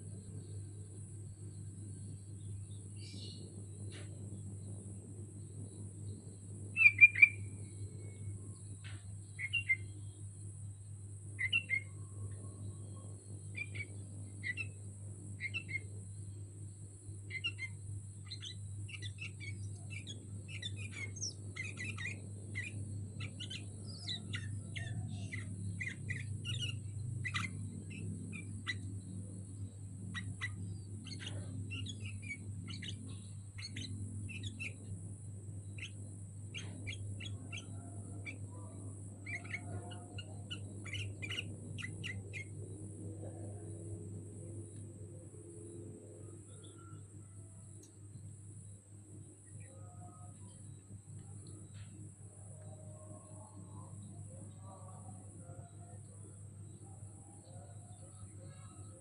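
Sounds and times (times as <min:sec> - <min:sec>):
bird chirping: 0:00.0 - 0:59.0
steady low hum: 0:00.0 - 0:59.0.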